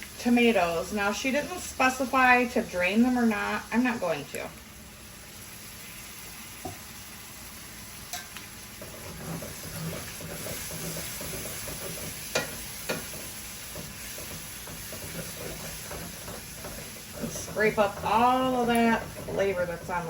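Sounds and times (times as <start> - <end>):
food sizzling in a pan: 0.0 - 20.0
utensil stirring and scraping: 8.8 - 20.0
utensil knocking against pan: 9.3 - 20.0.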